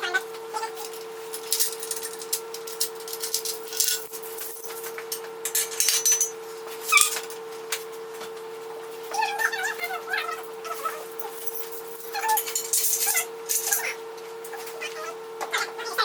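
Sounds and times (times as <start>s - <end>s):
steady hum: 0.0s - 16.0s
hand tools clinking on metal: 0.8s - 7.2s, 11.2s - 14.0s.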